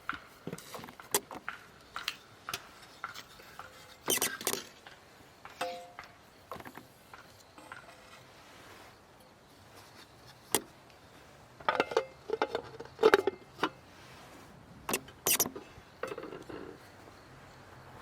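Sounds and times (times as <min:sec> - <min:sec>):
metal cookware clinking: 0:05.6 - 0:06.0.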